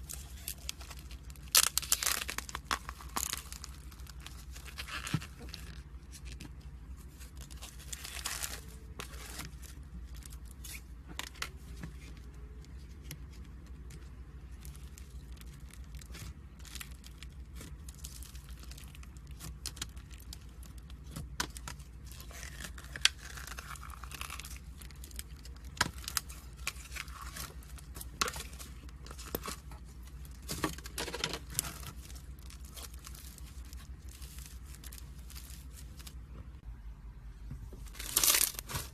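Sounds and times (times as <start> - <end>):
slime crackling and popping: 0.0 - 6.6, 13.6 - 36.2, 37.9 - 38.9
steady low hum: 0.0 - 38.9.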